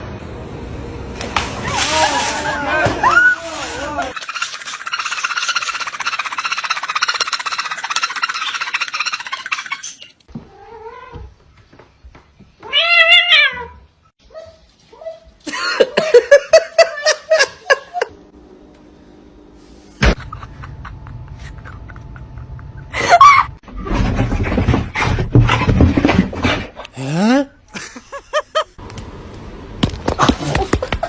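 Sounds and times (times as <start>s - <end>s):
cat meowing: 12.6s - 13.8s.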